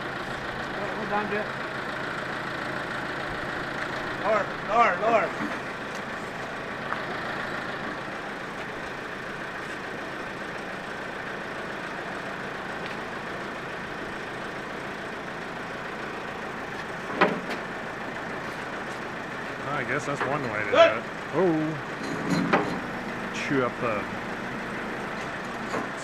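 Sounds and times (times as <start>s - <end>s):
diesel engine running: 0.0s - 26.0s.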